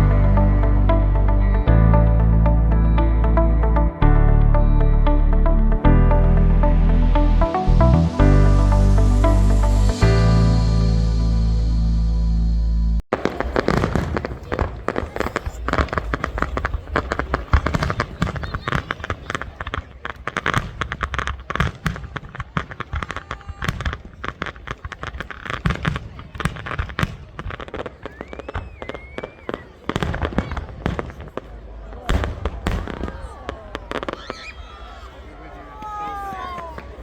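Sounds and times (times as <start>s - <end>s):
fireworks bangs and crackles: 13.1s - 37.0s.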